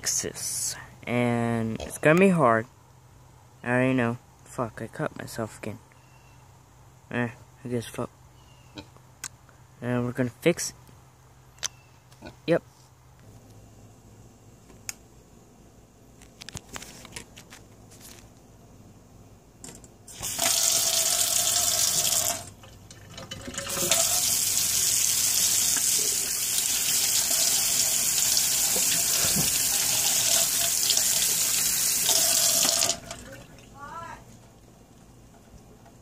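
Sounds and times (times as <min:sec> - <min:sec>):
running water: 0:20.2 - 0:34.0.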